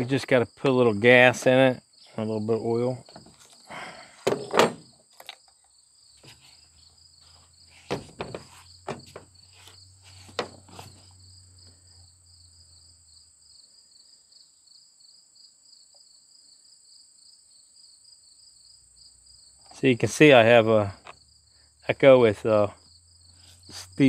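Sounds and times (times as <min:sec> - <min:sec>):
insects trilling: 0:00.0 - 0:24.0
caps and containers knocking: 0:07.9 - 0:09.3.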